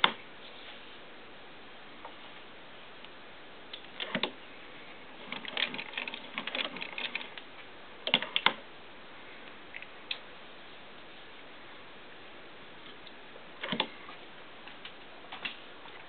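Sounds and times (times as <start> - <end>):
sewing machine mechanical clicks: 5.2 - 7.4.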